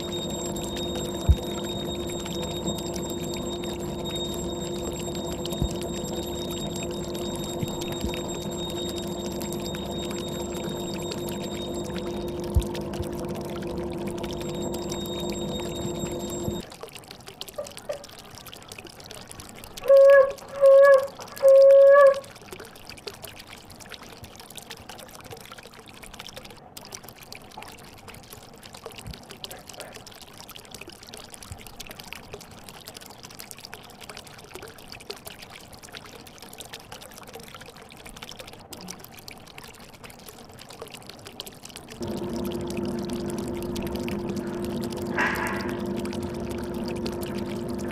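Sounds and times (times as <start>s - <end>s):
loud steady-pitched beeps: 0.0s - 12.6s, 14.2s - 16.6s
aquarium water trickling: 0.0s - 47.9s.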